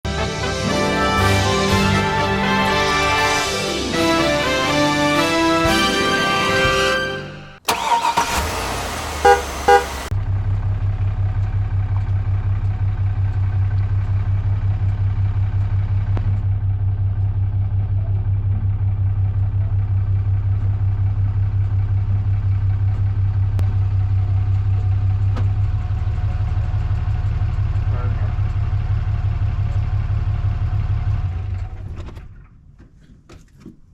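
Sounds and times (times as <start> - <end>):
vehicle engine idling: 7.7 - 32.4
vehicle horn toots: 9.1 - 10.1.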